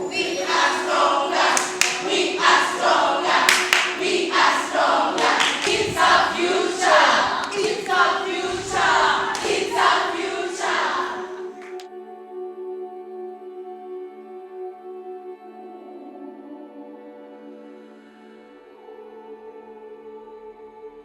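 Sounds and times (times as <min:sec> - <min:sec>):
group chanting in rhythm: 0:00.0 - 0:11.9
sharp claps: 0:00.1 - 0:11.9.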